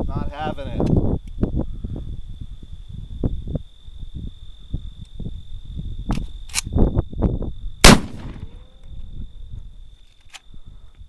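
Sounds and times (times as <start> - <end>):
high insect trill: 0.0 - 11.0
sharp gun clicks: 6.1 - 6.7, 7.8 - 8.6
pistol shot: 7.8 - 8.8.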